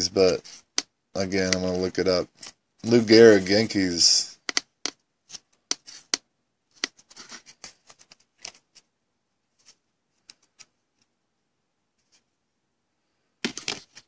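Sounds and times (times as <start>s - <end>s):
light clicks and taps at desk: 4.4s - 6.2s.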